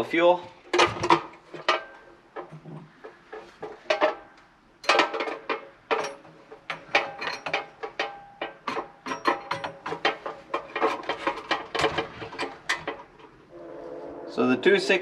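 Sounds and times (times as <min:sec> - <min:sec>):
metal clinks and knocks: 0:00.7 - 0:13.4.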